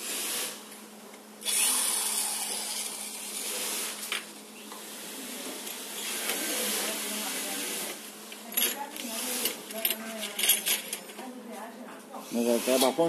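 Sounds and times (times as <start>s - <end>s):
parts rubbing and scraping: 4.9s - 11.2s, 12.4s - 13.0s.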